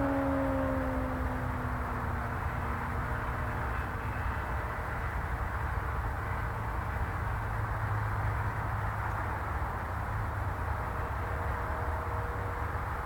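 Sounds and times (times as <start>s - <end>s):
motorcycle engine passing by: 0.0s - 3.4s
outdoor noise: 0.0s - 13.0s.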